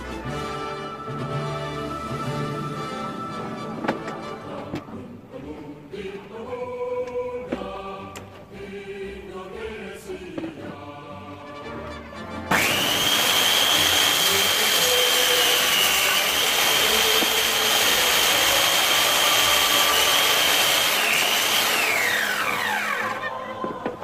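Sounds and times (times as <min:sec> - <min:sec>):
circular saw whining: 0:12.5 - 0:23.5.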